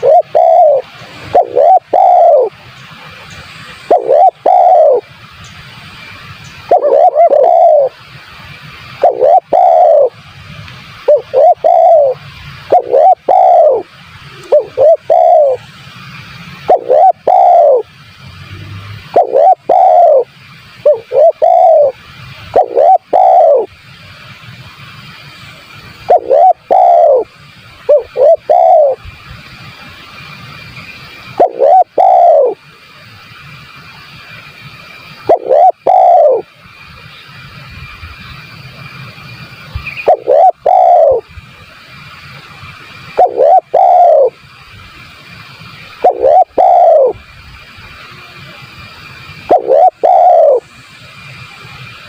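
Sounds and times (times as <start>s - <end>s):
dove cooing: 0.0s - 2.6s, 3.9s - 5.1s, 6.7s - 8.0s, 9.0s - 10.2s, 11.0s - 15.6s, 16.7s - 17.9s, 19.1s - 23.7s, 26.0s - 27.3s, 27.9s - 29.0s, 31.4s - 32.6s, 35.3s - 36.5s, 39.8s - 41.3s, 43.2s - 44.4s, 46.0s - 47.2s, 49.5s - 50.7s
faint steady hiss: 0.0s - 52.0s.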